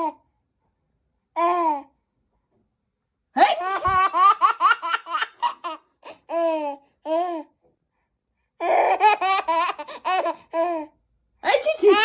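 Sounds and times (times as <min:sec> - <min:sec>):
baby laughing: 0:03.5 - 0:07.5, 0:08.6 - 0:11.0, 0:11.8 - 0:12.0.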